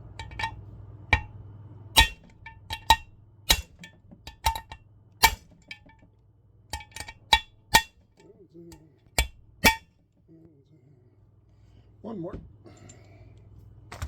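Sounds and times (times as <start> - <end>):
hammer tapping metal: 0.2 - 1.4, 2.0 - 6.0, 6.8 - 8.0, 9.2 - 9.9.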